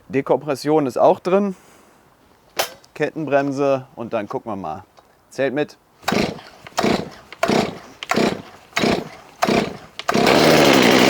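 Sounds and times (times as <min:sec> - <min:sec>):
chainsaw engine running: 0:06.0 - 0:11.0
starter rope pulls: 0:06.0 - 0:11.0.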